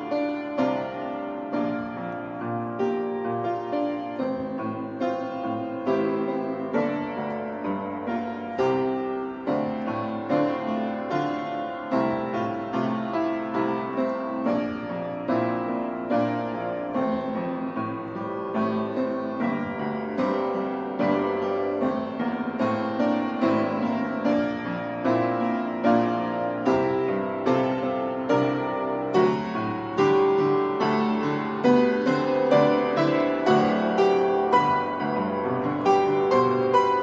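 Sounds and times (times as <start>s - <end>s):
piano music: 0.0s - 37.0s.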